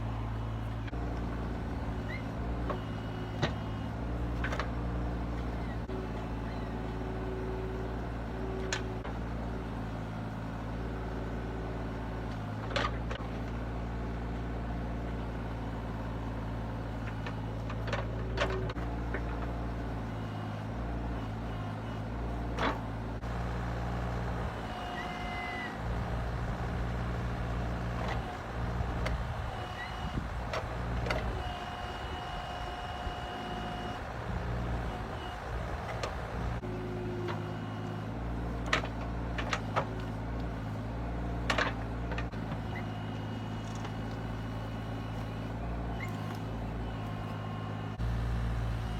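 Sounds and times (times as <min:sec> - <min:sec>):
heavy machine engine running: 0:00.0 - 0:48.9.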